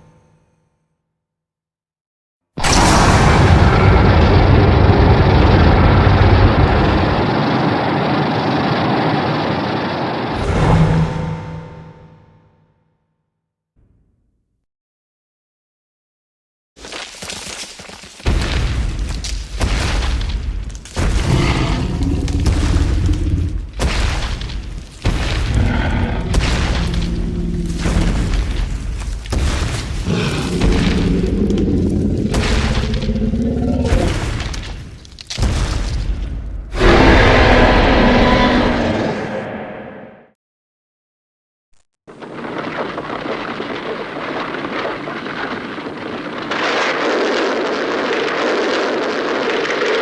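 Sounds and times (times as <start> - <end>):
monster rumbling: 2.6 - 10.8, 21.0 - 34.9, 36.7 - 40.2.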